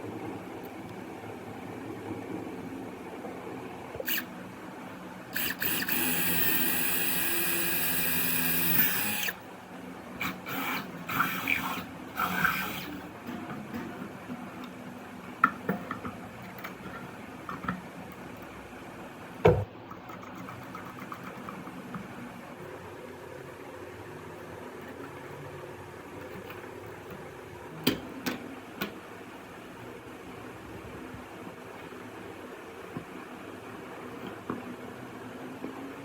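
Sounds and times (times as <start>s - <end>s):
electric drill whining: 4.1s - 4.3s, 5.4s - 9.4s.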